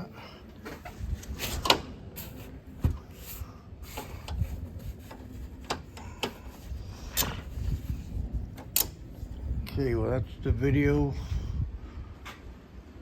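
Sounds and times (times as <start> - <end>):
rubbing and scraping: 0.7 - 9.4.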